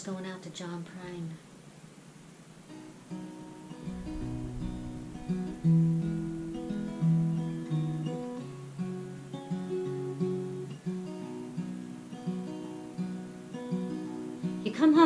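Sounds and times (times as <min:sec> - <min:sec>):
acoustic guitar strumming: 0:02.7 - 0:15.0.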